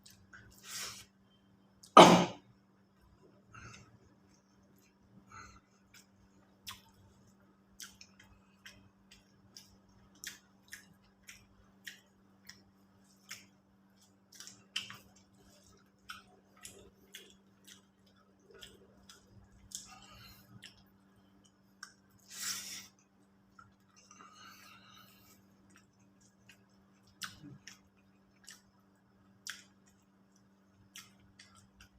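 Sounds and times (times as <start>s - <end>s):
chewing: 3.6s - 31.9s
wet mouth clicks and smacks: 5.9s - 7.0s, 25.7s - 28.7s, 29.4s - 31.9s.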